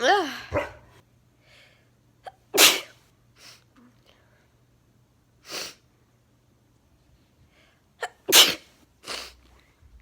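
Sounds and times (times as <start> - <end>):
girl sneezing: 2.3 - 3.0, 8.0 - 9.3.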